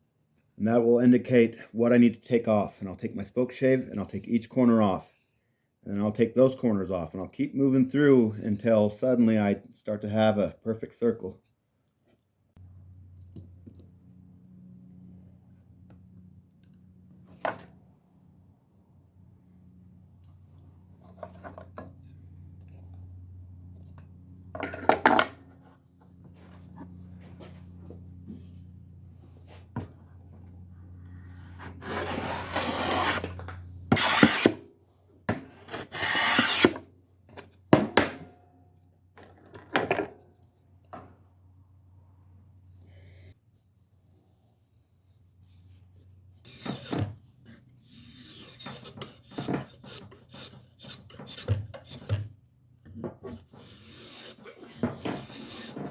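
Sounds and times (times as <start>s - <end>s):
low electrical hum: 12.5s - 53.2s
spokeshave scraping wood: 31.2s - 34.6s, 35.6s - 36.9s, 44.9s - 52.3s, 53.0s - 55.9s.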